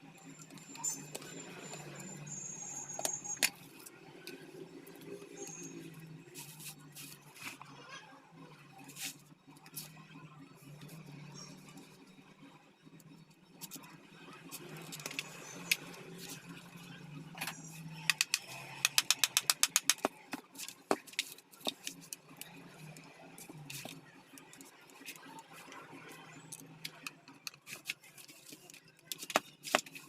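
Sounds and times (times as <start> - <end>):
evenly spaced clicks: 17.6 - 20.2.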